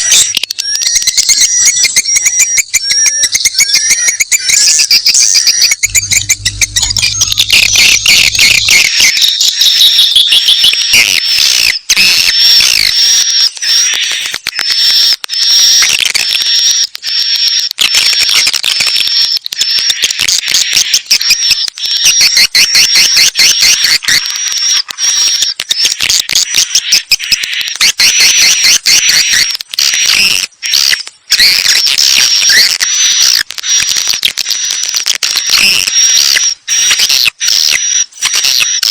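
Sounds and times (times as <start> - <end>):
high-pitched bird chirping: 0.8 - 8.9.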